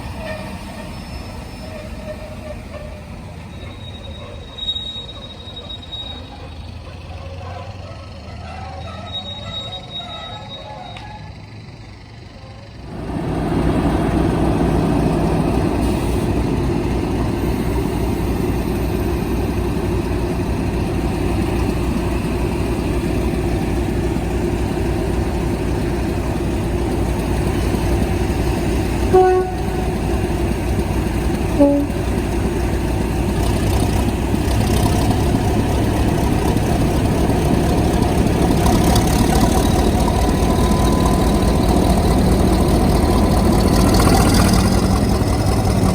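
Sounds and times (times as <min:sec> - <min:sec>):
diesel locomotive engine rumbling: 0:00.0 - 0:45.9
two-tone locomotive horn toots: 0:07.2 - 0:11.5, 0:28.9 - 0:32.4.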